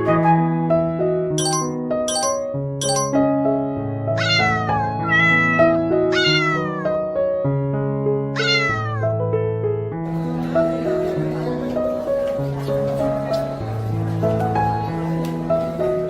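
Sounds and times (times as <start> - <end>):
soft keyboard music: 1.2 - 3.7
cat meowing: 4.2 - 7.1, 8.3 - 9.2.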